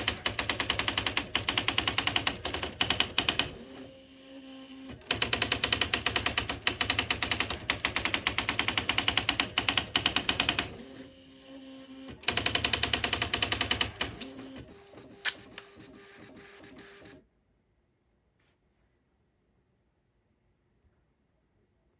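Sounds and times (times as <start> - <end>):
electronic typewriter typing: 0.0 - 3.9, 5.0 - 11.0, 12.2 - 17.2.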